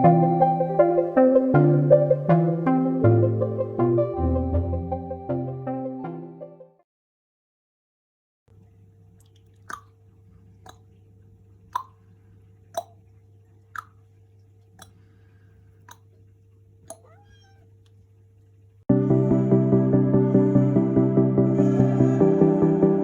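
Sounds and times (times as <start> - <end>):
background music: 0.0 - 6.8, 18.9 - 23.0
faint steady hum: 8.5 - 18.9.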